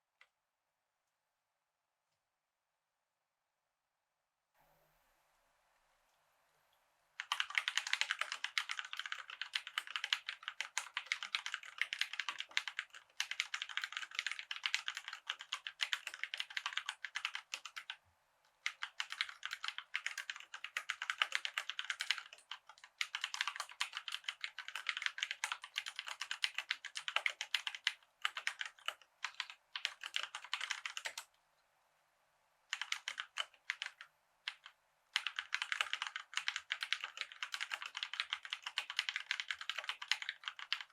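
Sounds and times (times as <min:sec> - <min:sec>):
fast typing on mechanical keyboard: 0:07.2 - 0:18.0, 0:18.6 - 0:31.3, 0:32.7 - 0:40.9.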